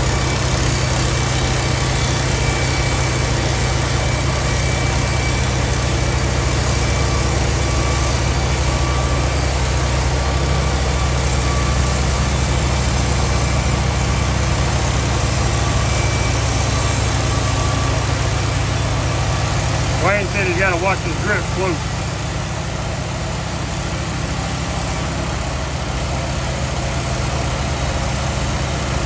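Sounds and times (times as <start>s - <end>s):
engine running steadily: 0.0s - 29.0s.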